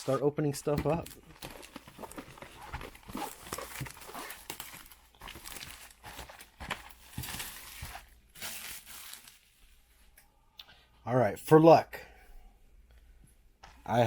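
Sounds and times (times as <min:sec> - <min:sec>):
shrink wrap tearing and crinkling: 0:00.9 - 0:09.5.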